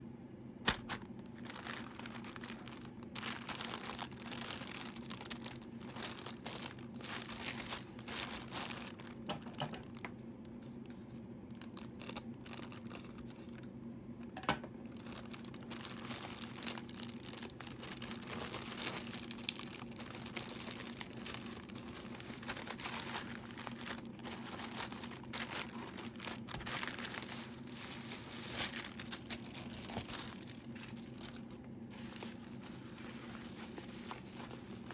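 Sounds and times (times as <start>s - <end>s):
steady low hum: 0.0s - 34.9s
packaging crinkling and tearing: 0.6s - 34.9s.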